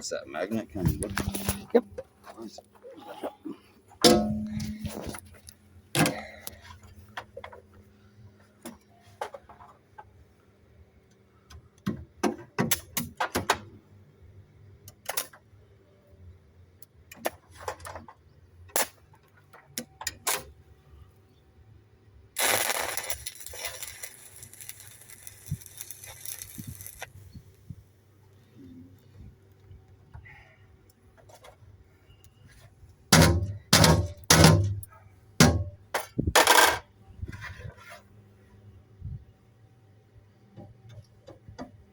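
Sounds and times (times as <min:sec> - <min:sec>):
steady hissing crackling noise: 0:22.3 - 0:30.0.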